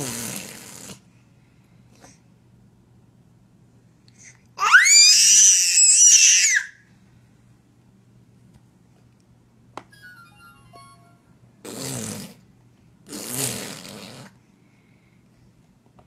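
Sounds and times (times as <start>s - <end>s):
baby squealing: 4.6s - 6.7s.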